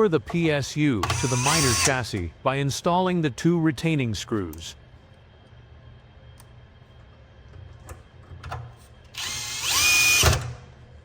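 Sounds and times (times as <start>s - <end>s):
electric screwdriver motor whine: 9.2s - 10.4s.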